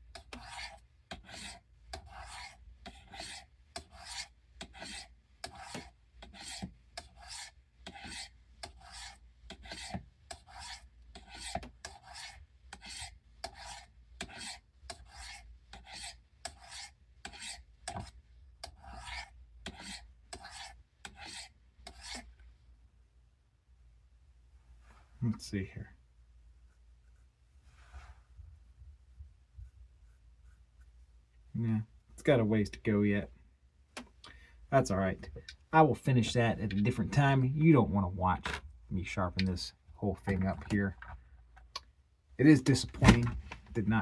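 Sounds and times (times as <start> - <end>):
knife scraping on sharpener rods: 0.2 - 22.3.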